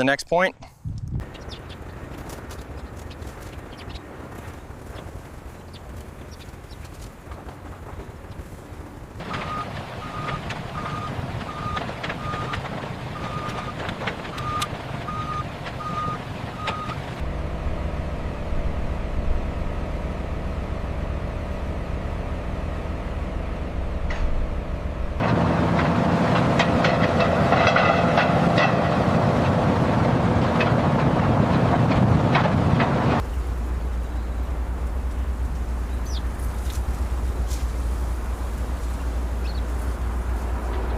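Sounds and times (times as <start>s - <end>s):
heavy vehicle engine running: 1.2s - 40.9s
machinery running: 9.2s - 40.9s
reversing alarm beeps: 9.3s - 12.6s, 13.2s - 17.0s
metallic clanks: 25.2s - 29.1s.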